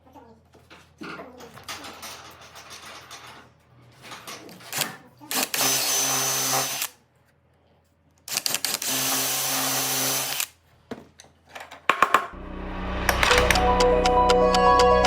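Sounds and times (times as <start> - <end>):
electric drill running: 5.3 - 6.9, 8.3 - 10.5
sharp clicks and knocks: 11.2 - 12.4
music: 12.4 - 15.0.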